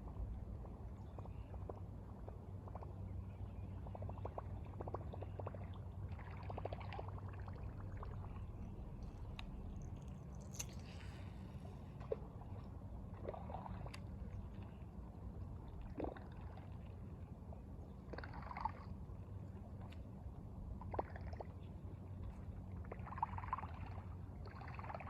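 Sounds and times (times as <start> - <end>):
low rumble: 0.0 - 17.6
small ticks and clicks: 3.9 - 11.4.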